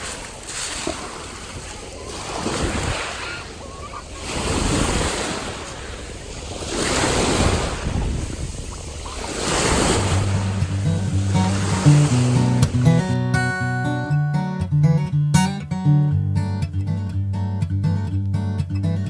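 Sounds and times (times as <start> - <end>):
sea waves washing ashore: 0.0 - 13.2.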